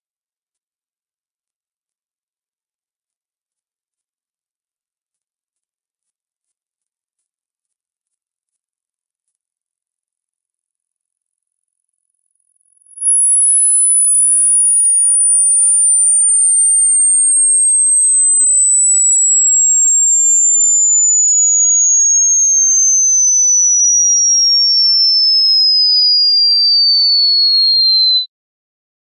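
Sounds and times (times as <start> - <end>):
falling high-pitched sine tone: 12.8 - 28.3.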